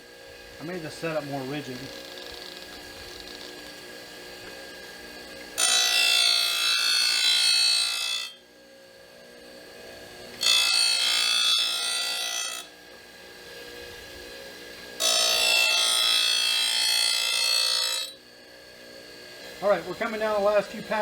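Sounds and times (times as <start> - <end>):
grinder humming: 0.0 - 8.4, 9.2 - 21.0.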